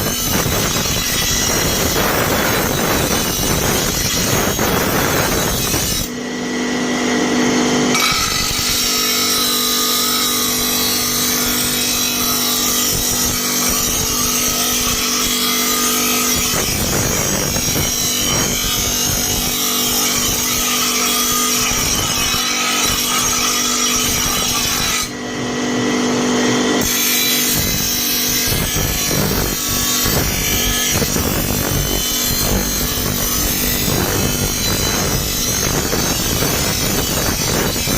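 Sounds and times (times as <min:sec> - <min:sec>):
electric grinder grinding steel: 0:00.0 - 0:37.9.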